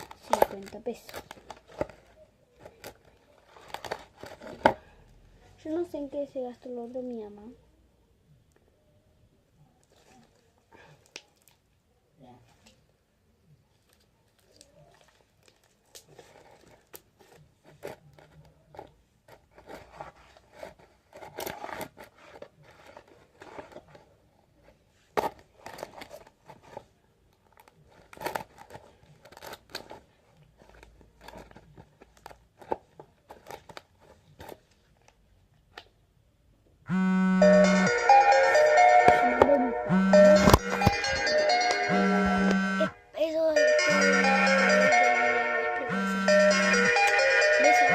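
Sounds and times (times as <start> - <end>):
music: 37.4 - 42.9, 43.6 - 47.9.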